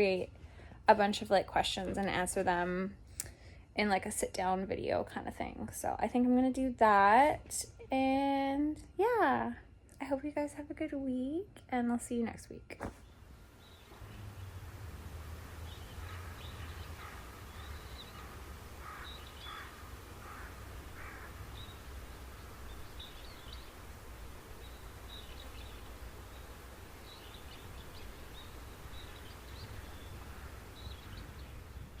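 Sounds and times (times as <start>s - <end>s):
birds calling: 13.0s - 32.0s.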